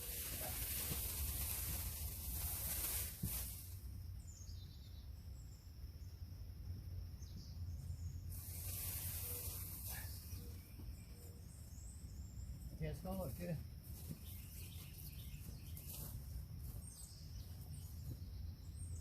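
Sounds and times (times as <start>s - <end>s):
hissing rustle: 0.0s - 4.0s, 8.2s - 10.7s.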